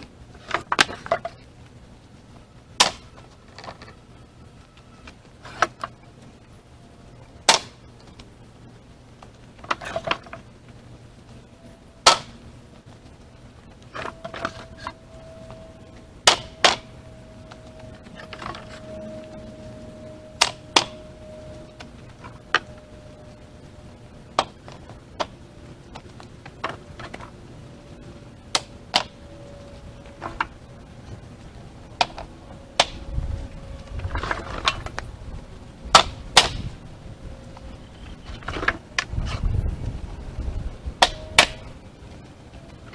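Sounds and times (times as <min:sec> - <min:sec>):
firewood pieces knocking together: 0:02.8 - 0:04.0.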